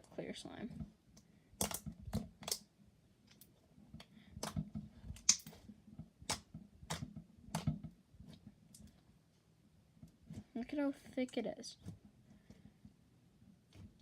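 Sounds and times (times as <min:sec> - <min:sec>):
slime clicking pops: 0:01.6 - 0:01.8, 0:05.2 - 0:05.5.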